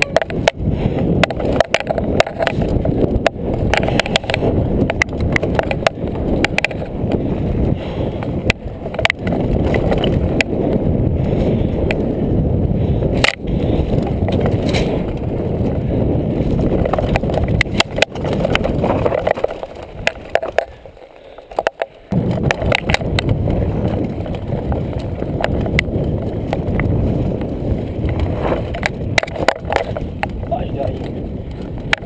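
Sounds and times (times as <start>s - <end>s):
bike clicking and rattling: 0.0s - 32.0s
bike tyres rumbling on dirt: 0.0s - 32.0s.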